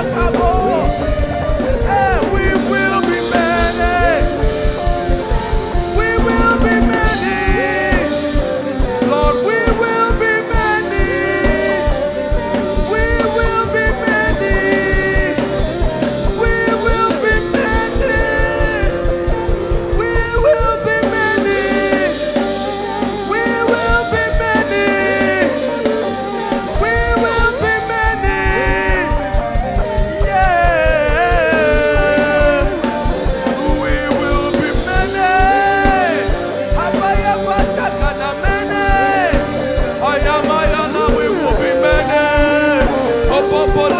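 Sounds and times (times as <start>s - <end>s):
gliding melodic lead line: 0.0s - 43.9s
live worship band: 0.0s - 43.9s
steady drum beat: 0.0s - 43.9s.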